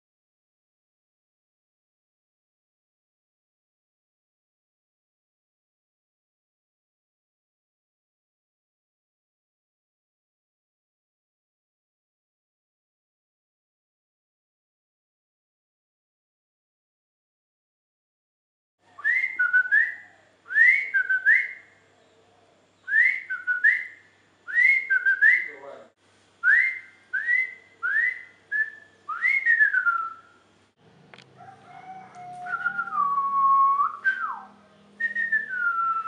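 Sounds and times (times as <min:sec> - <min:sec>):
faint low hum: 0:18.8 - 0:36.0
bird singing whistled notes: 0:18.9 - 0:21.8, 0:22.8 - 0:25.7, 0:26.4 - 0:30.4, 0:32.2 - 0:36.0.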